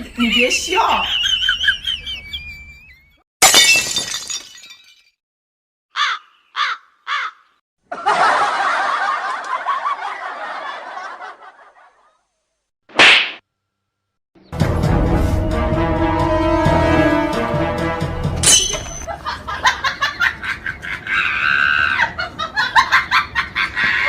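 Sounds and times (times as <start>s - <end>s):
crash like breaking glass: 18.4s - 19.1s.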